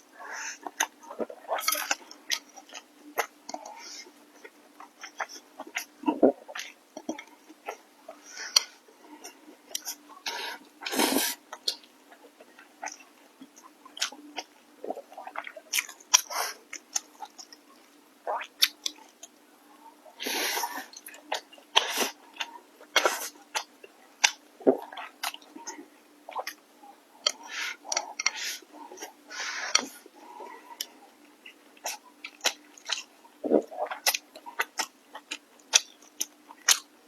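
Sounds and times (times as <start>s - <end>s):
wet chewing and mouth smacks: 0.6s - 19.4s, 20.9s - 37.0s.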